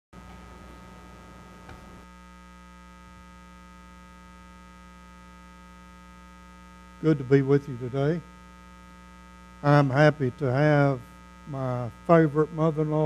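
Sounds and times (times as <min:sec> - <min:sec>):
electrical mains hum: 0:00.2 - 0:13.0
faint hiss: 0:05.2 - 0:13.0.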